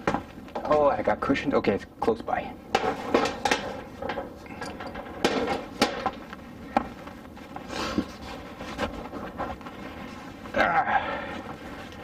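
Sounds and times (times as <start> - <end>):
hard objects knocking and clunking: 2.7 - 6.9.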